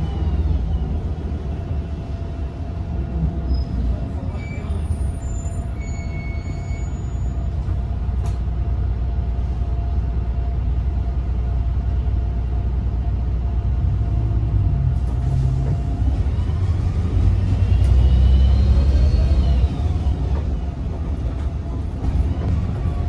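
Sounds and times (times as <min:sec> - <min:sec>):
bus engine low rumble: 0:00.0 - 0:23.0.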